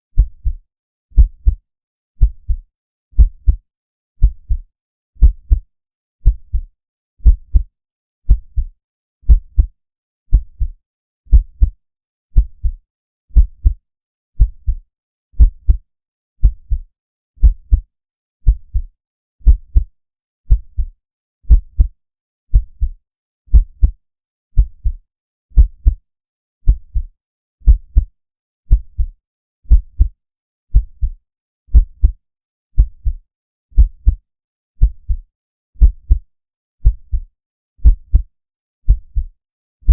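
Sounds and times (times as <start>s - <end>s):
heartbeat thumps: 0.2s - 0.6s, 1.2s - 1.6s, 2.2s - 2.6s, 3.2s - 3.6s, 4.2s - 4.6s, 5.2s - 5.6s, 6.2s - 7.7s, 8.3s - 8.7s, 9.3s - 9.7s, 11.3s - 11.8s, 12.4s - 12.8s, 13.4s - 13.8s, 14.4s - 14.8s, 15.4s - 15.8s, 16.4s - 16.8s, 17.4s - 17.8s, 18.4s - 19.9s, 20.5s - 20.9s, 21.5s - 21.9s, 23.5s - 24.0s, 24.6s - 25.0s, 25.6s - 26.0s, 26.6s - 27.1s, 27.7s - 28.1s, 28.7s - 29.1s, 29.7s - 30.1s, 30.7s - 32.2s, 32.8s - 33.2s, 33.8s - 34.2s, 34.8s - 35.2s, 35.8s - 36.2s, 36.8s - 37.2s, 37.8s - 38.3s, 38.9s - 39.3s.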